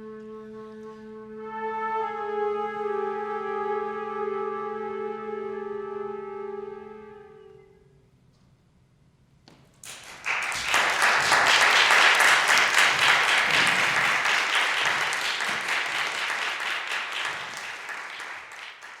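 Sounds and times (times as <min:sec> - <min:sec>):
audience applauding: 0:09.8 - 0:19.0.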